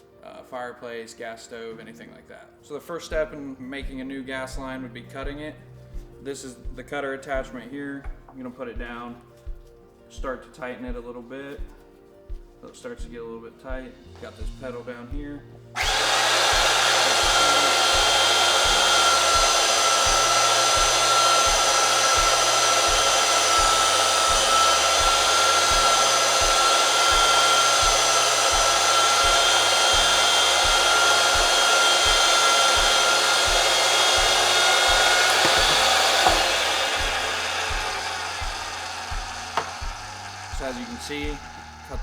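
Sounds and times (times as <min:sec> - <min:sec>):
pipe threading machine motor whine: 0:15.7 - 0:42.0.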